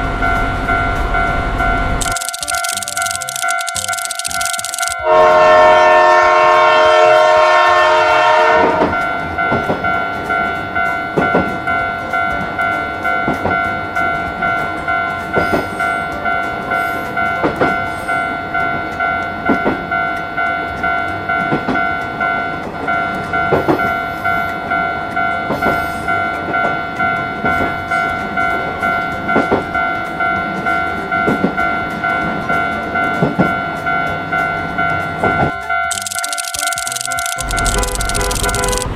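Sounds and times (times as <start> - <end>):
train horn: 5.0 - 9.1.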